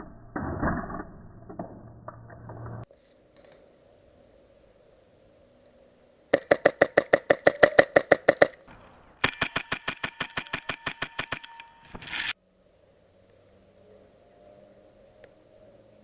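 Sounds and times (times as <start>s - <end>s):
airsoft gun firing bursts: 6.4s - 8.6s, 9.2s - 11.5s.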